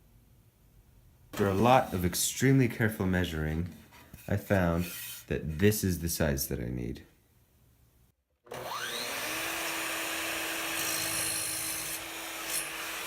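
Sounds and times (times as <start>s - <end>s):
power tool cutting wood: 1.4s - 2.0s, 8.4s - 13.0s.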